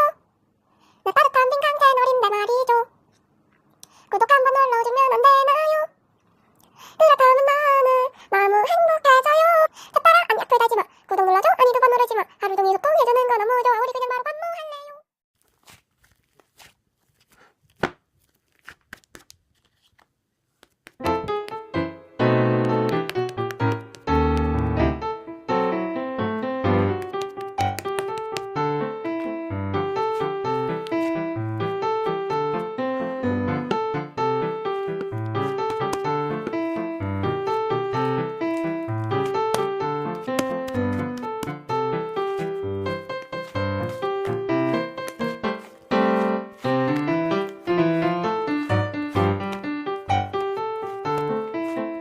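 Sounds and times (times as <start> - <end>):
piano music: 21.0 - 52.0.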